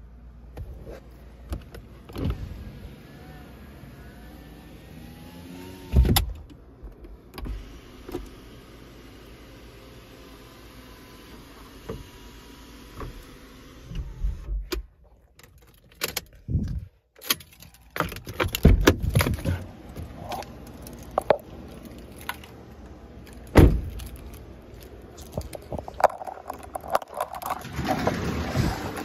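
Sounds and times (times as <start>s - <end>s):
clicks and rattles inside a car: 0.5s - 2.6s, 6.0s - 8.3s, 13.0s - 29.0s
loud thumps: 23.5s - 24.4s.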